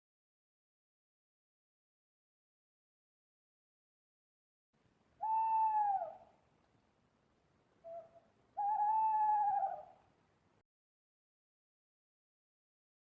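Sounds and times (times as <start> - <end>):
owl hooting: 5.2 - 6.3, 7.8 - 10.0.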